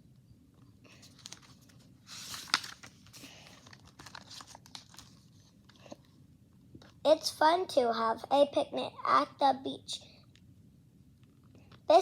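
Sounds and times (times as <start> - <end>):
paper pages rustling: 0.9 - 6.1.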